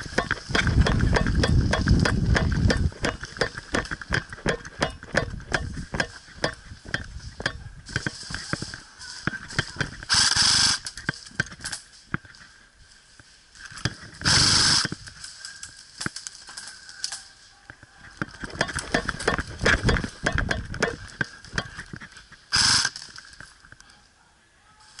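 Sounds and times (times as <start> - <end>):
clicks and knocks: 0.0 - 8.7, 18.3 - 22.0
airsoft gun full-auto fire: 10.1 - 10.8, 14.2 - 14.8, 22.5 - 23.0.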